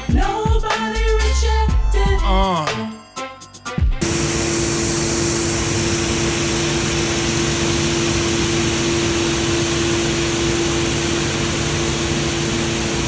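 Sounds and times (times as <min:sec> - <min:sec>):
engine-driven machine humming: 0:04.0 - 0:13.0.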